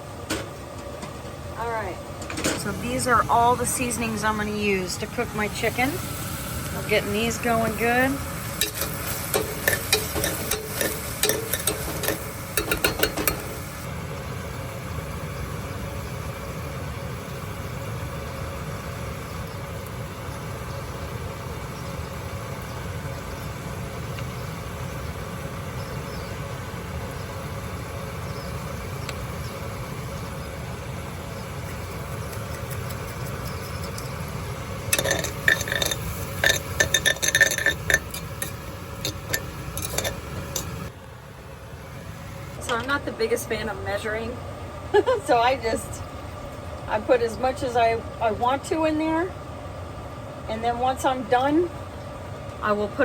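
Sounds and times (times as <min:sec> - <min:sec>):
steady low hum: 0:00.0 - 0:53.0
seasonings clicking and scraping in pot: 0:07.3 - 0:13.8, 0:31.0 - 0:40.9.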